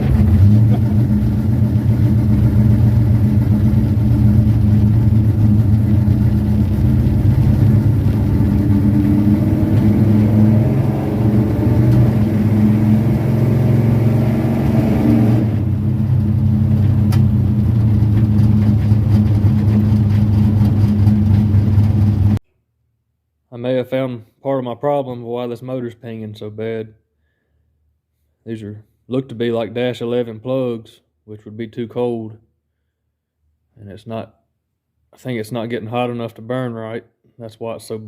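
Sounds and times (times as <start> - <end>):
car engine idling: 0.0 - 22.4
rising engine note: 0.0 - 22.4.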